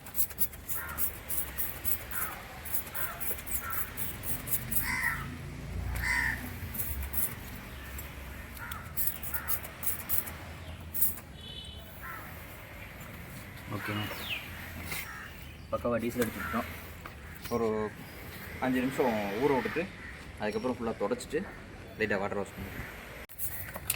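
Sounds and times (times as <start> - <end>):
crows cawing: 0.7 - 1.3, 2.1 - 7.3, 8.3 - 9.8, 12.0 - 12.5, 13.7 - 14.3, 14.9 - 15.5, 16.2 - 17.6, 19.4 - 20.4.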